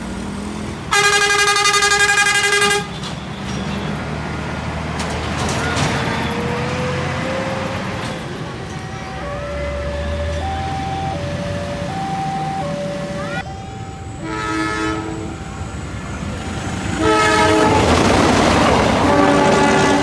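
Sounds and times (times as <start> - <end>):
rumble of passing train: 0.0 - 20.0
train horn: 0.9 - 2.9, 14.2 - 15.4, 16.9 - 20.0
two-tone warning alarm: 6.8 - 18.0.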